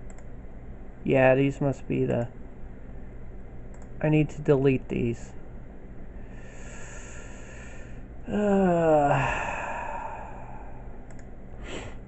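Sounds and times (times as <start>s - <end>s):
man sighing: 6.6s - 10.9s.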